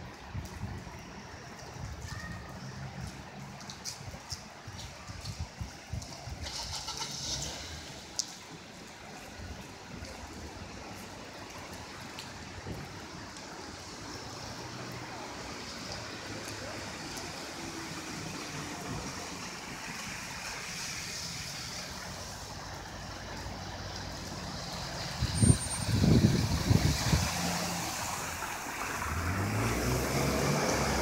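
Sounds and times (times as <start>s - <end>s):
runoff water rushing: 0.0s - 31.0s
wind buffeting microphone: 25.0s - 27.8s.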